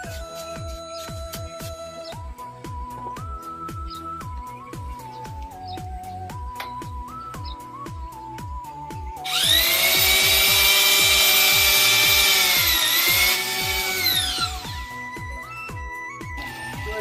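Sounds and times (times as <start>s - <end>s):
music with steady beat: 0.0s - 17.0s
electric drill motor whining: 9.2s - 17.0s.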